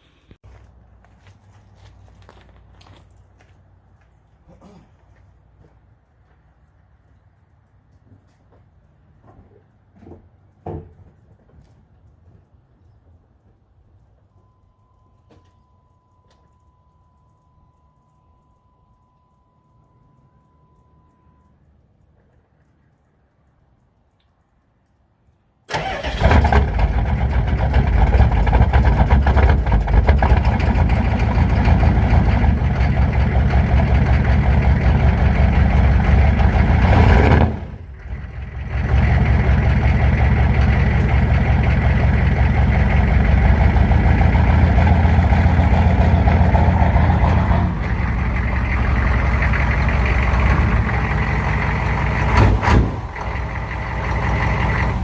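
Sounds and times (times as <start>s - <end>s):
truck engine starting and idling: 25.6s - 55.0s.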